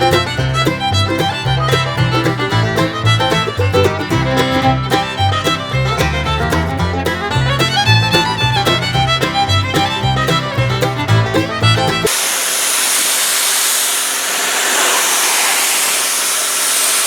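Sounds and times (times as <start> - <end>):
upbeat bluegrass tune with fiddle: 0.0 - 12.4.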